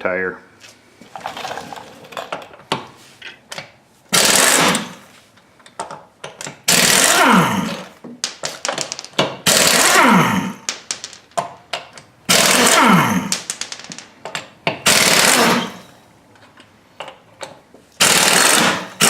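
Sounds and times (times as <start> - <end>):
impact wrench hammering: 4.1 - 5.1, 6.4 - 7.9, 9.2 - 10.9, 12.3 - 13.6, 14.3 - 15.9, 18.0 - 19.0.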